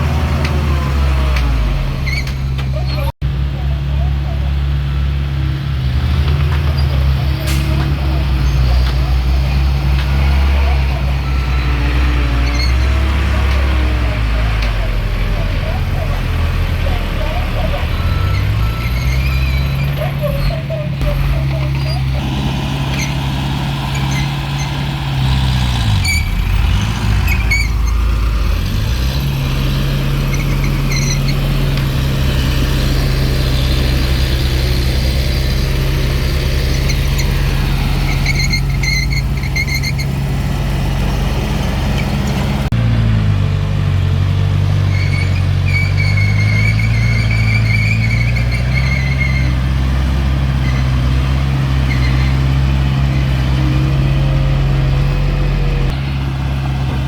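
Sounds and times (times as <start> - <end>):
bulldozer diesel engine running: 0.0 - 57.0
short high squeals: 17.8 - 22.2, 38.1 - 40.2, 44.9 - 49.6.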